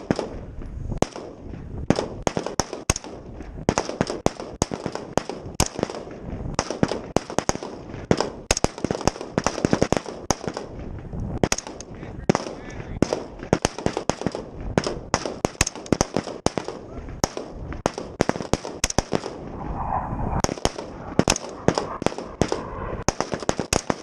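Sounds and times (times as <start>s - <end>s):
rifle gunfire single shots: 11.4s - 19.4s.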